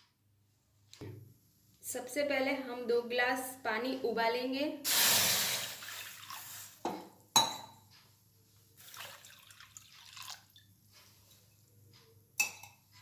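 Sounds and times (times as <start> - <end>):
water pouring into a pan: 4.9 - 6.8, 8.8 - 10.6
faint drips: 8.7 - 11.8.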